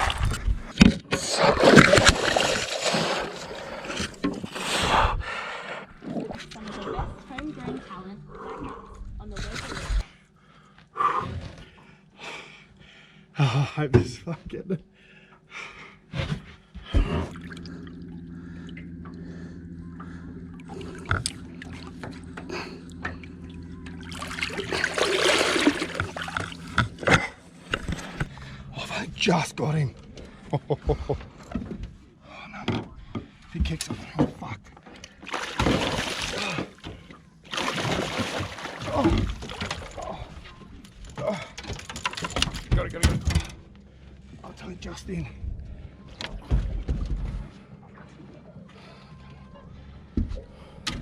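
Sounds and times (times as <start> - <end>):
boat motor humming: 0.0 - 13.3, 14.8 - 51.0
water dripping and splashing: 24.0 - 27.0, 35.2 - 36.7, 37.5 - 40.0.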